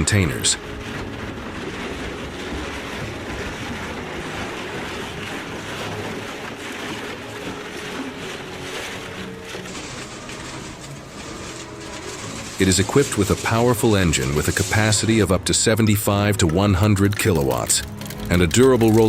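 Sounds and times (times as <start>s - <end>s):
plastic crackling in shredder: 0.0s - 15.5s, 16.3s - 19.0s.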